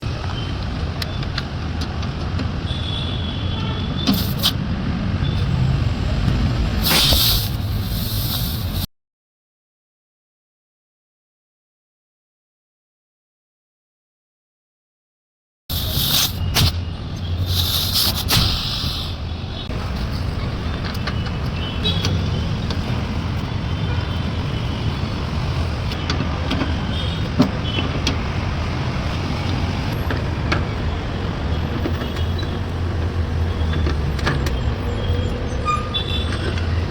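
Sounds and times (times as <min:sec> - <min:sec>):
pressurised gas hissing: 0:04.1 - 0:04.6, 0:05.4 - 0:08.9, 0:15.7 - 0:19.4.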